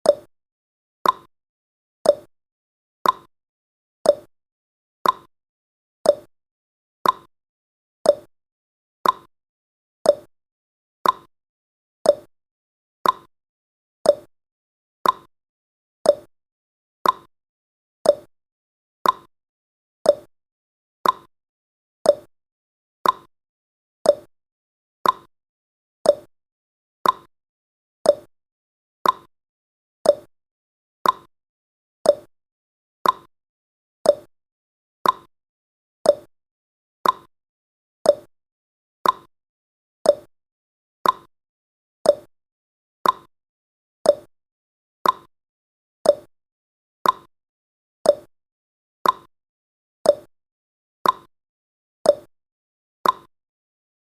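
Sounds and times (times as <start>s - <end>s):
timer ticking: 0.0s - 0.3s, 1.0s - 1.3s, 2.1s - 2.3s, 3.0s - 3.3s, 4.1s - 4.3s, 5.0s - 5.3s, 6.1s - 6.3s, 7.0s - 7.3s, 8.1s - 8.3s, 9.0s - 9.3s, 10.1s - 10.3s, 11.0s - 11.3s, 12.1s - 12.3s, 13.0s - 13.3s, 14.1s - 14.3s, 15.0s - 15.3s, 16.1s - 16.3s, 17.0s - 17.3s, 18.0s - 18.3s, 19.0s - 19.3s, 20.1s - 20.3s, 21.0s - 21.3s, 22.0s - 22.3s, 23.0s - 23.3s, 24.0s - 24.3s, 25.0s - 25.3s, 26.0s - 26.3s, 27.0s - 27.3s, 28.0s - 28.3s, 29.0s - 29.3s, 30.0s - 30.3s, 31.0s - 31.3s, 32.0s - 32.3s, 33.0s - 33.3s, 34.0s - 34.3s, 35.0s - 35.3s, 36.0s - 36.3s, 37.0s - 37.3s, 38.1s - 38.3s, 39.0s - 39.3s, 40.1s - 40.3s, 41.0s - 41.3s, 42.1s - 42.3s, 43.0s - 43.3s, 44.1s - 44.3s, 45.0s - 45.3s, 46.1s - 46.3s, 47.0s - 47.3s, 48.1s - 48.3s, 49.0s - 49.3s, 50.1s - 50.3s, 51.0s - 51.3s, 52.1s - 52.3s, 53.0s - 53.3s.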